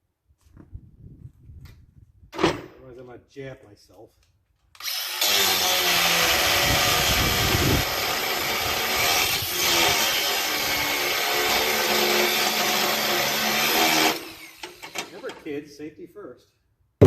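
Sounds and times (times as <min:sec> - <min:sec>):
power tool cutting: 0:04.8 - 0:15.4.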